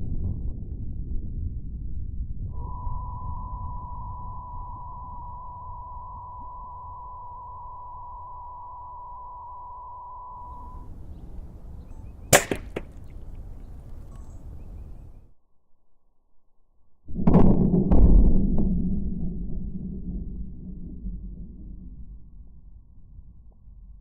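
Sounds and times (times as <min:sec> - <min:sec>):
low rumble: 0:00.0 - 0:08.4, 0:17.1 - 0:24.0
pellet rifle crack: 0:12.2 - 0:14.6.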